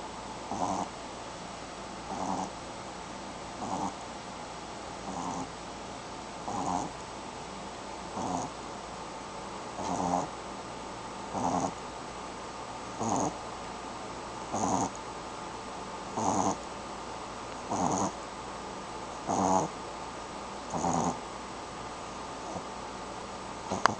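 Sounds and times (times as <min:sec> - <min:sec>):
pet snoring: 0:00.0 - 0:01.0, 0:02.1 - 0:02.6, 0:03.6 - 0:04.0, 0:05.0 - 0:05.6, 0:06.4 - 0:07.0, 0:08.1 - 0:08.6, 0:09.8 - 0:10.3, 0:11.3 - 0:11.8, 0:12.9 - 0:13.4, 0:14.5 - 0:15.0, 0:16.1 - 0:16.7, 0:17.6 - 0:18.2, 0:19.2 - 0:19.8, 0:20.7 - 0:21.2, 0:22.4 - 0:22.7, 0:23.7 - 0:23.9.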